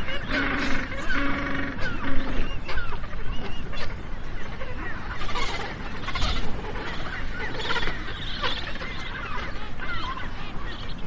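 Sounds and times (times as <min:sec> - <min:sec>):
penguins calling: 0:00.0 - 0:11.0.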